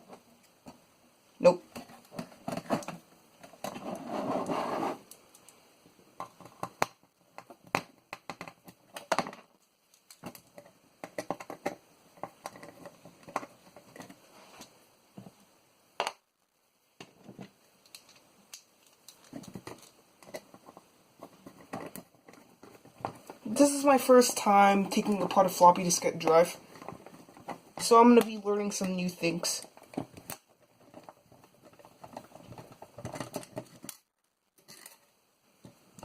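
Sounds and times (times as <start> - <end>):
long loud scrape: 3.8 - 5.0
small parts clicking and tapping: 6.2 - 15.4, 17.0 - 23.4, 26.2 - 36.0.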